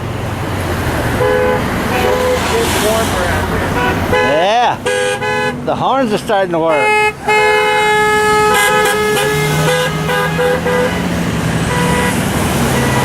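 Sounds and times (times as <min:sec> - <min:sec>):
traffic rushing: 0:00.0 - 0:13.0
vehicle horns honking: 0:01.1 - 0:13.0
low steady horn tone: 0:01.2 - 0:03.0, 0:03.6 - 0:05.6, 0:06.7 - 0:13.0.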